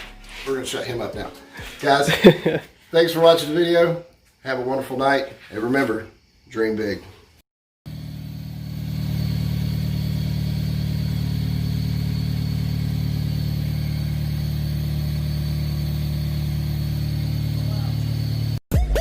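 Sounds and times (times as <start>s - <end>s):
car engine idling: 7.9s - 18.6s.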